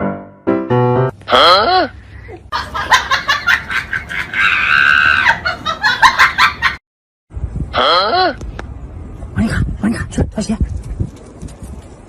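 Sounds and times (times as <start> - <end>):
high-pitched laughing: 1.3 - 6.8
shrieking: 4.3 - 5.4.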